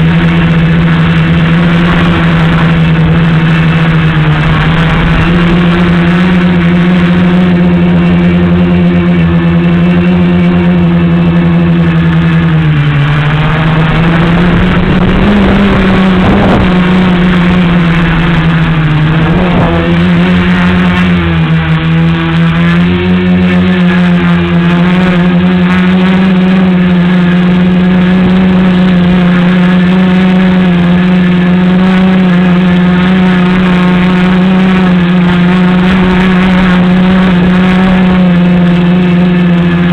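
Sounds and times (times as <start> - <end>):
drone motors buzzing: 0.0 - 39.9.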